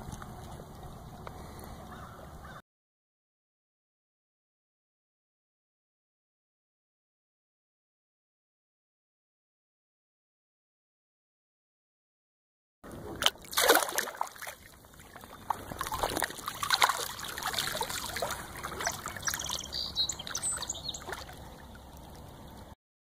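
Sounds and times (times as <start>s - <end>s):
water splashing and trickling: 0.0s - 2.6s, 12.9s - 22.8s.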